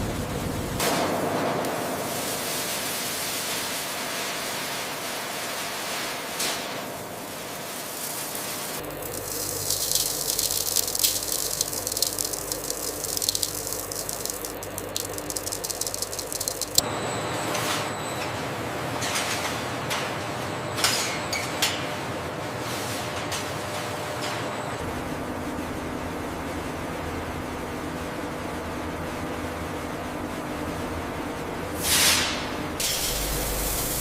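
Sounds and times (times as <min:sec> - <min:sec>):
dense rattle of small ticks: 0:08.8 - 0:16.8.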